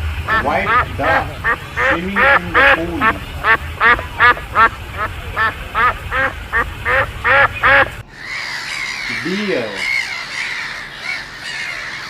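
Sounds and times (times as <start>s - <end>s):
steady hiss: 0.0s - 8.1s
duck quacking: 0.0s - 12.0s.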